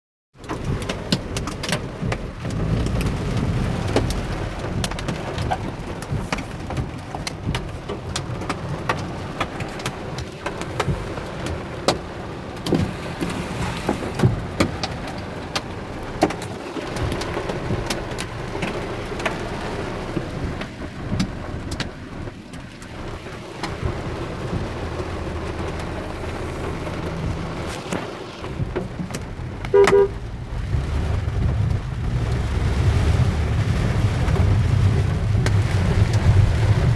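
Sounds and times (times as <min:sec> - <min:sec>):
hailstones clicking on hard surfaces: 0:00.4 - 0:29.8, 0:30.5 - 0:36.9
heavy rain: 0:00.4 - 0:36.9
low rumble: 0:28.4 - 0:36.9.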